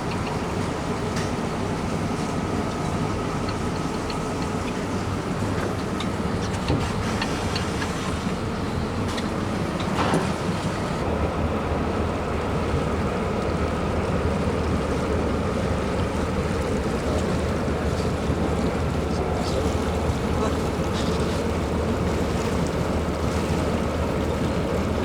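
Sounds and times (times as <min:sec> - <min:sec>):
river water rushing: 0:13.8 - 0:25.0.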